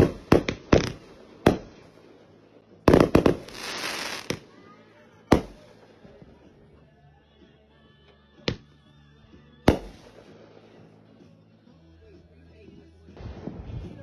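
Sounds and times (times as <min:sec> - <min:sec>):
firework bangs: 0:00.0 - 0:02.2, 0:02.8 - 0:04.6, 0:05.3 - 0:05.7, 0:09.7 - 0:10.8.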